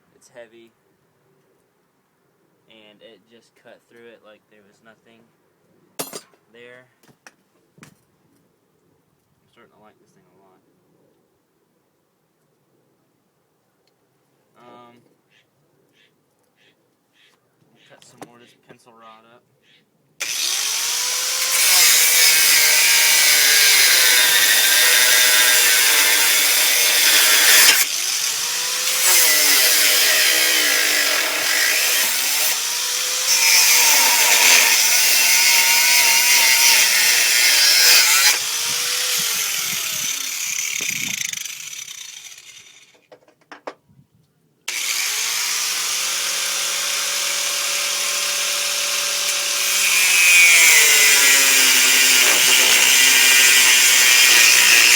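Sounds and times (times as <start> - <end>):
angle grinder cutting metal rod: 20.2 - 43.0, 44.7 - 54.9.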